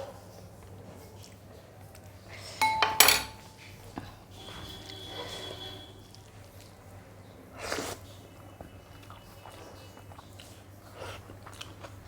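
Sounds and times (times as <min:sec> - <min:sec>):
person chewing: 0:09.0 - 0:12.0.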